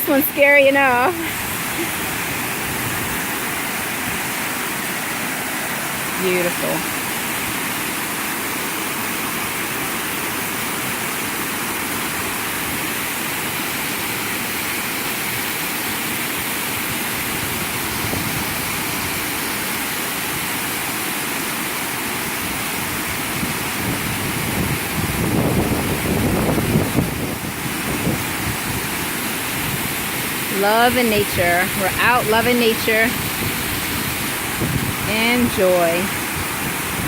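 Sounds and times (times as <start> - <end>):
waterfall rushing: 0.0 - 37.0
wind buffeting microphone: 17.3 - 19.3, 22.8 - 37.0.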